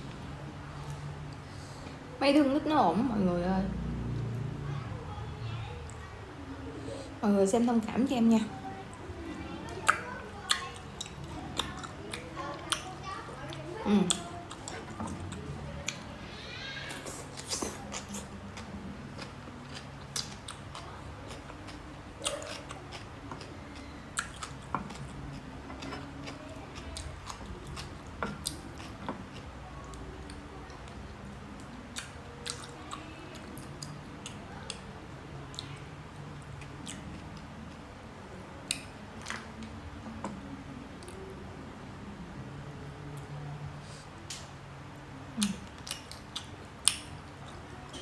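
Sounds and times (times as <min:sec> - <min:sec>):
steady low hum: 0:00.0 - 0:48.0
person chewing: 0:09.8 - 0:16.1, 0:16.8 - 0:31.0, 0:31.6 - 0:34.9, 0:36.4 - 0:37.8, 0:45.4 - 0:48.0.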